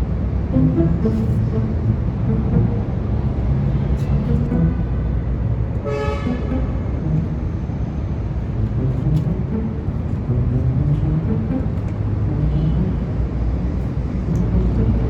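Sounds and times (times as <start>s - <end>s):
road traffic rumble: 0.0s - 15.0s
car horn toot: 5.8s - 6.7s.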